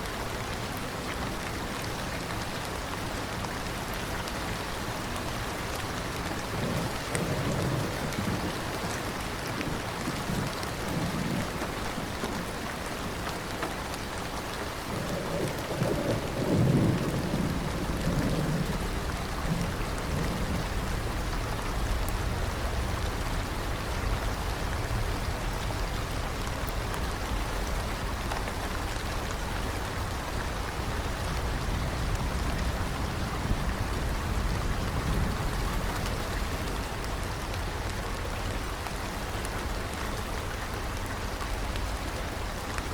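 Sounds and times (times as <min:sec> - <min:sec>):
steady rain falling: 0:00.0 - 0:42.9
rolling thunder: 0:06.4 - 0:12.0, 0:14.9 - 0:28.1, 0:30.0 - 0:37.7.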